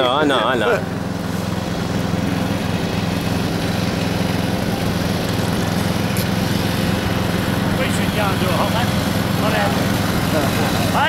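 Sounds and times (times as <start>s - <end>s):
ride-on lawn mower engine: 0.0s - 11.0s.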